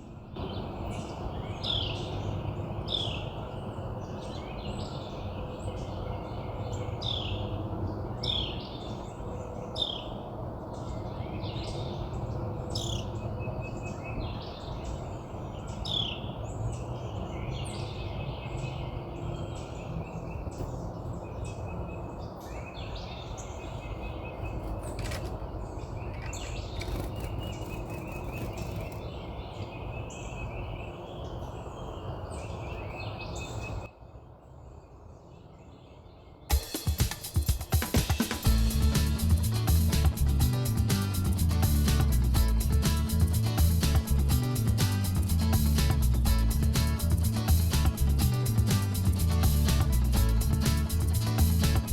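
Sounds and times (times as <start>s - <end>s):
songbirds chirping and trilling: 0.0s - 51.9s
steady low rumble: 38.4s - 51.9s.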